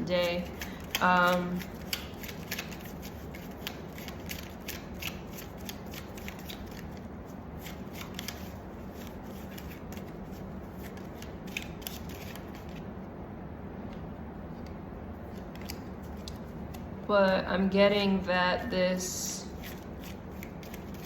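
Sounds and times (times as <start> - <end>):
steady low hum: 0.0 - 21.0
cards being shuffled: 0.2 - 12.9, 14.6 - 16.9, 19.5 - 21.0.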